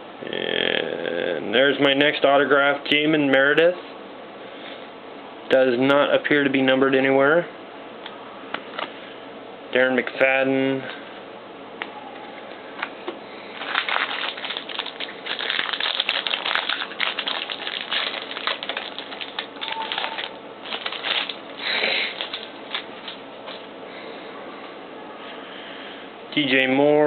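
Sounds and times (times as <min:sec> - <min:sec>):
crinkly packaging crumpled by hand: 0:13.5 - 0:23.6.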